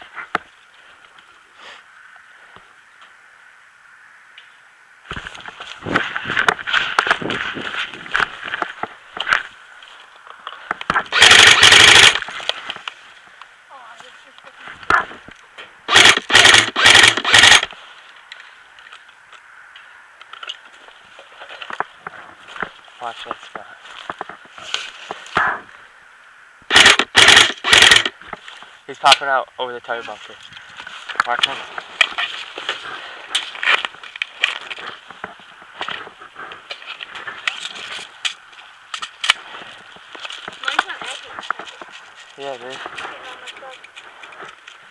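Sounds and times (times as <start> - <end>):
airsoft gun firing bursts: 11.1 - 12.2, 15.9 - 17.7, 26.7 - 28.2
crunching and crackling clicks: 30.4 - 44.9.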